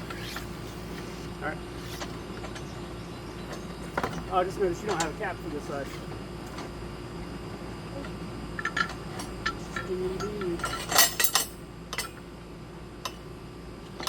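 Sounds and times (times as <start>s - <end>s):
tire irons clinking on wheel rim: 8.6s - 12.3s.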